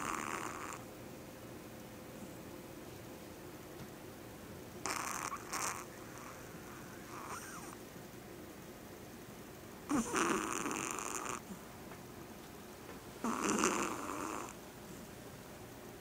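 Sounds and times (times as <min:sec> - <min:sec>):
dog snoring: 0:00.0 - 0:00.8, 0:04.8 - 0:07.8, 0:09.9 - 0:11.6, 0:13.2 - 0:14.6.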